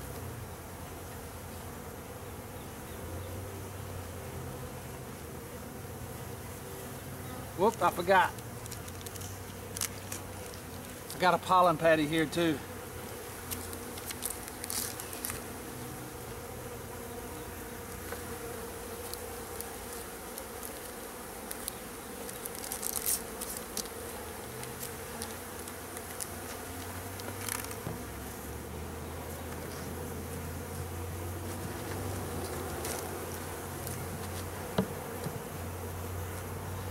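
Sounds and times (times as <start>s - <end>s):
honey bees buzzing: 0.0s - 36.9s
clicks and rustles: 8.4s - 11.2s, 13.4s - 15.5s.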